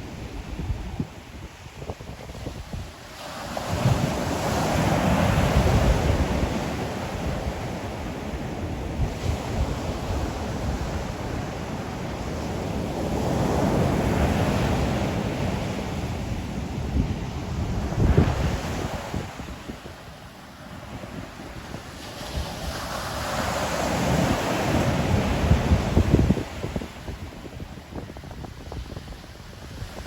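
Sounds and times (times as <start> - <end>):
waves breaking on shore: 0.0 - 30.0
wind buffeting microphone: 0.0 - 30.0.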